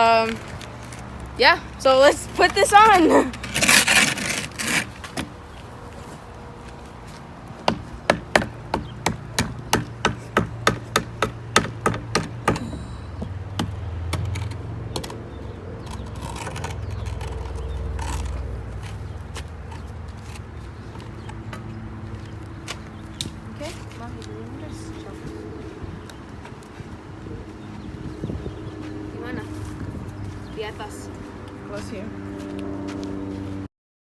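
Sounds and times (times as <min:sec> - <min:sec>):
sharp knocks: 0:07.6 - 0:15.2.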